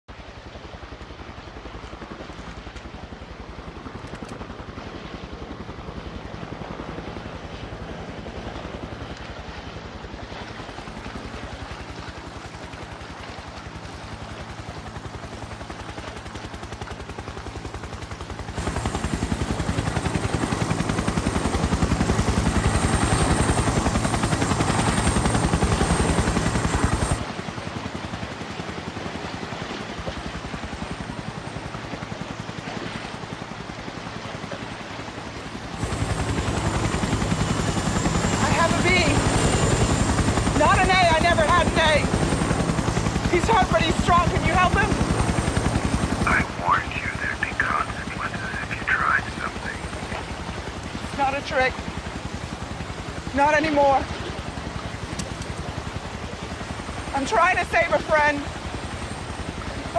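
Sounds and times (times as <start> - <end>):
helicopter rotor blades chopping: 0.2 - 59.9.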